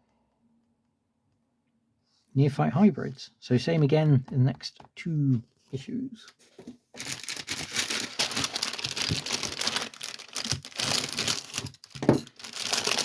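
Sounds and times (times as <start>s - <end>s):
plastic packaging crinkling: 7.0s - 13.0s.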